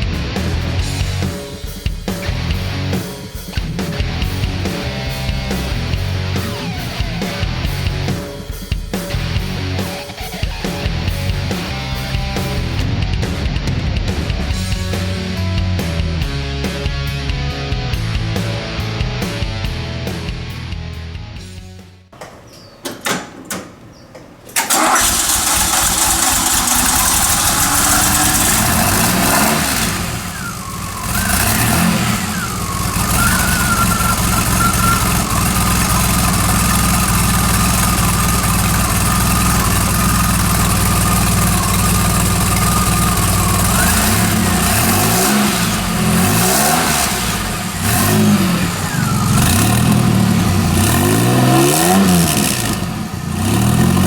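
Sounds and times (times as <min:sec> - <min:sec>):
car engine starting and idling: 0:22.1 - 0:54.0
car engine revving: 0:22.2 - 0:54.0.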